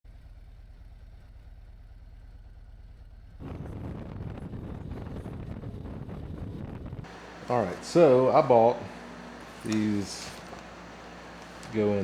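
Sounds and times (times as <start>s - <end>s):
wind buffeting microphone: 3.4s - 7.1s.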